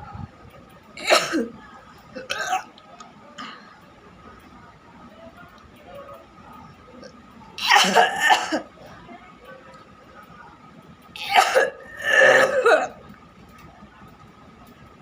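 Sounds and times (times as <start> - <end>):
person coughing: 7.6 - 8.6, 11.2 - 13.0.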